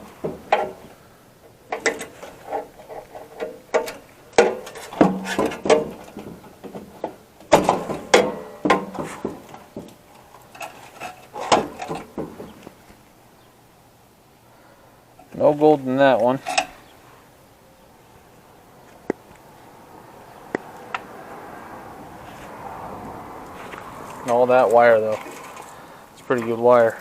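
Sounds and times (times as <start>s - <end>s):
metal parts clanking and rattling: 0.2s - 0.9s, 1.6s - 12.5s, 16.2s - 16.8s.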